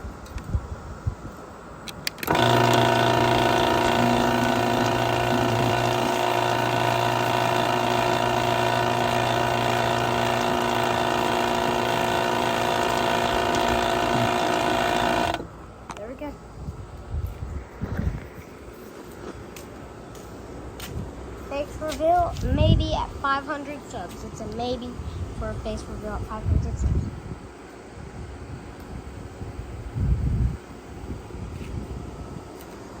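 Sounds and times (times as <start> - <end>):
garage door opener click: 1.9 - 15.5
garage door opener motor and chain: 2.1 - 15.5.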